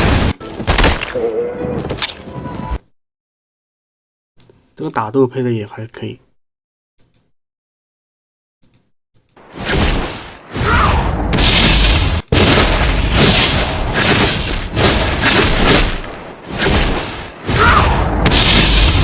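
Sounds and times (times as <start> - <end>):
deep booms: 17.5 - 19.0.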